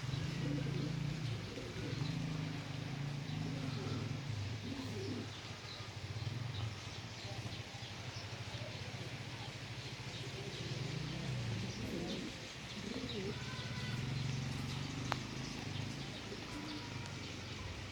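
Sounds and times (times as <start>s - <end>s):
pigeons cooing: 0.0s - 17.9s
rain hissing: 9.1s - 17.9s.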